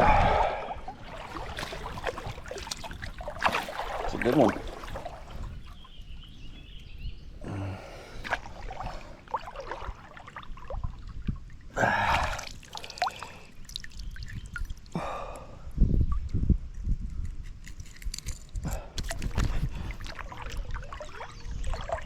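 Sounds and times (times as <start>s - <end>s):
water splashing and dripping: 0.8s - 6.2s, 7.8s - 15.2s, 19.0s - 22.0s.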